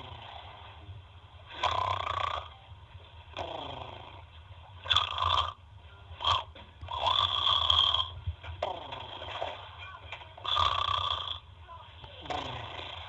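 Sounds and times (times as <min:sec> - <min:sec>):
baby snoring: 0:00.0 - 0:00.6, 0:01.5 - 0:02.6, 0:03.3 - 0:05.6, 0:06.2 - 0:09.5, 0:10.4 - 0:11.4, 0:12.2 - 0:13.0.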